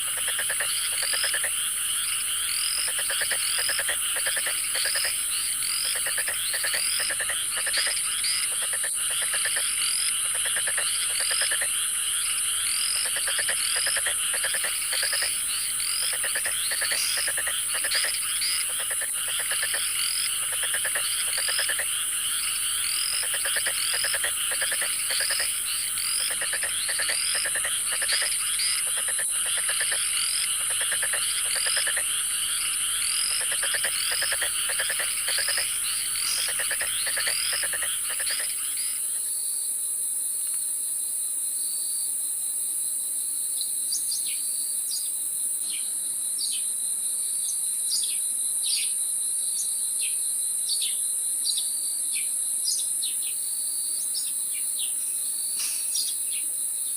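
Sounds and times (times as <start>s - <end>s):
high-pitched insect drone: 0.0s - 39.2s
frogs calling in trills: 0.0s - 39.4s.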